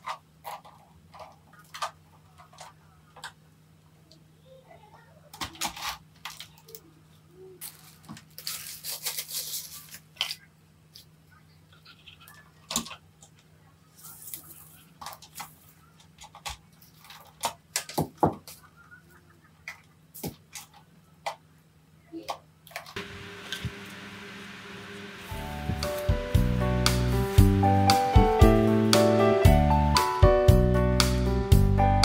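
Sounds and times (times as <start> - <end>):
rustling: 7.4 - 11.1.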